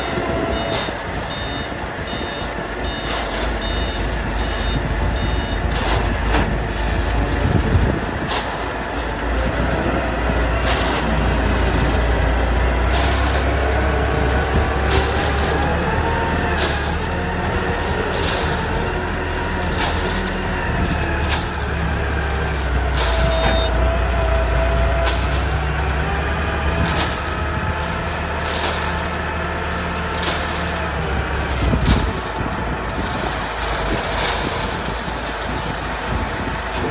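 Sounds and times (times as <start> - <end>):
reversing beep: 0.0 - 7.6, 23.2 - 23.9
concrete mixer engine rumble: 0.0 - 36.9.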